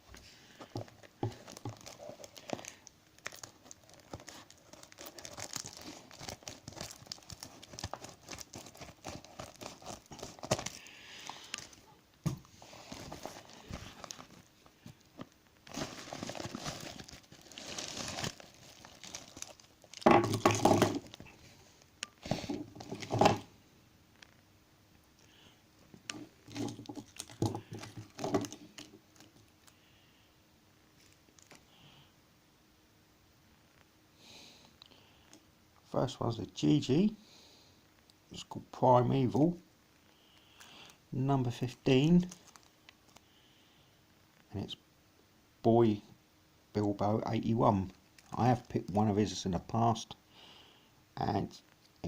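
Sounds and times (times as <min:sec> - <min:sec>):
packaging crinkling and tearing: 0:00.6 - 0:11.8, 0:12.7 - 0:21.4, 0:26.0 - 0:29.7, 0:31.0 - 0:31.6, 0:42.2 - 0:43.2.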